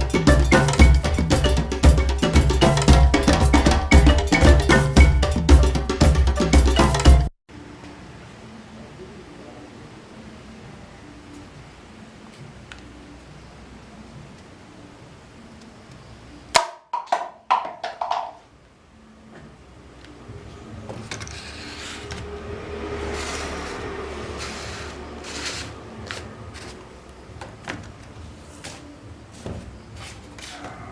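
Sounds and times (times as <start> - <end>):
rustling and handling noise: 24.3 - 30.9.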